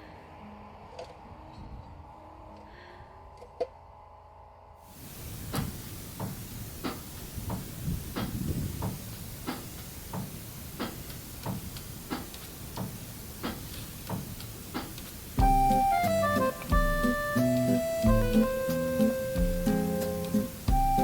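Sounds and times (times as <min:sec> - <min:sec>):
steady hiss: 0:04.9 - 0:21.0.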